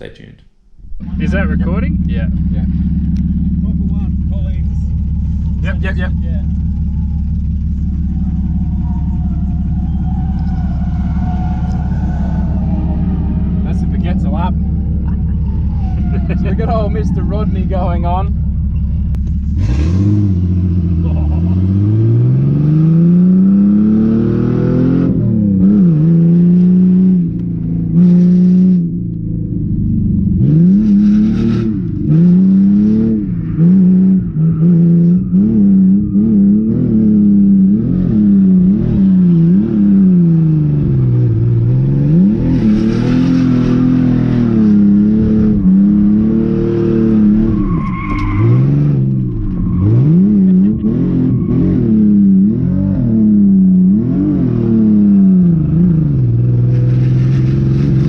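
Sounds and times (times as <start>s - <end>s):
car engine revving: 0.6s - 58.0s
tyre squeal: 6.4s - 18.9s, 45.6s - 52.5s.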